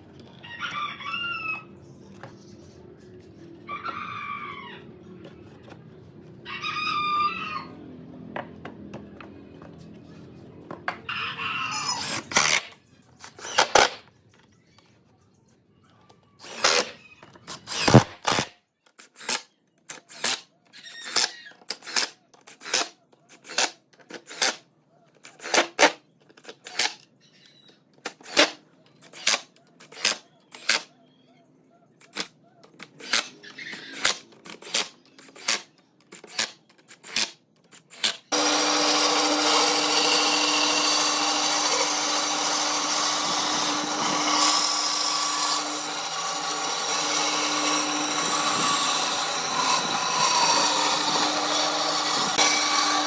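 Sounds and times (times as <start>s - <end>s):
power tool humming: 16.4s - 18.5s, 37.9s - 53.0s.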